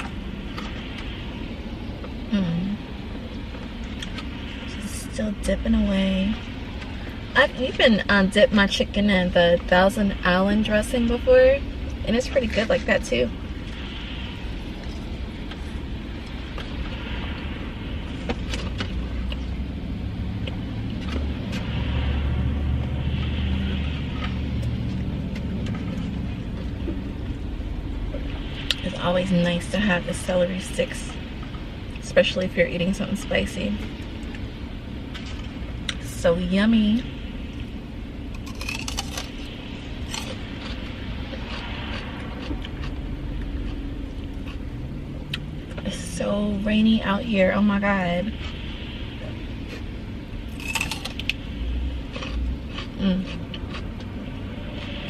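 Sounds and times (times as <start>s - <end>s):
car engine rumble: 0.0s - 55.0s
person eating crunchily: 38.3s - 43.0s, 50.5s - 51.4s, 52.0s - 54.1s.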